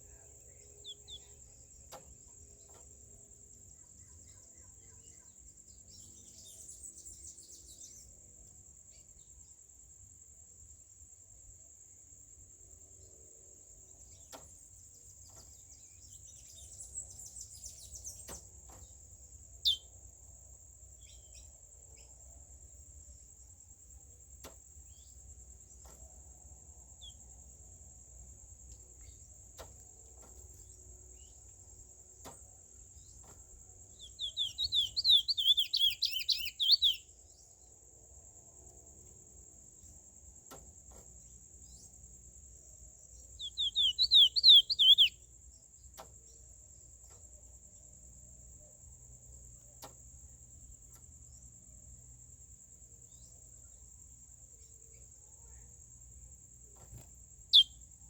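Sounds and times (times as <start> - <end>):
bird chirps: 0.4 - 2.0, 19.6 - 20.0, 33.0 - 37.4, 43.2 - 45.2, 57.5 - 57.8.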